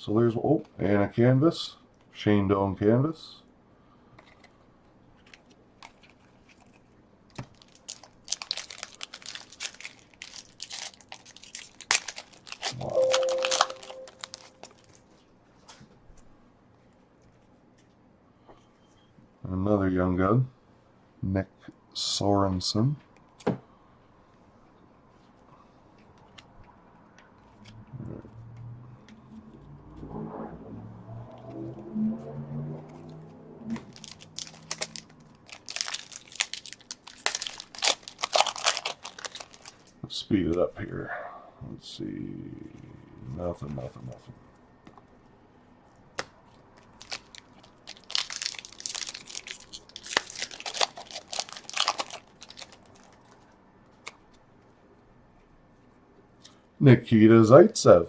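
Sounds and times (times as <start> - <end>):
trading cards rustling: 5.2 - 15.2, 33.8 - 39.9, 46.8 - 54.4
wrapper tearing and crinkling: 5.3 - 15.1, 33.8 - 40.0, 46.8 - 54.3.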